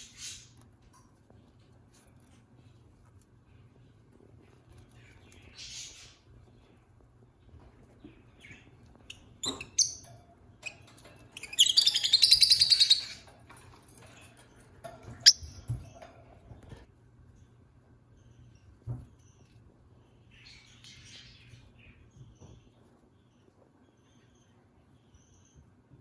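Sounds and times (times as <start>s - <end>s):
lovebird chirping: 8.4s - 10.8s, 11.4s - 13.3s.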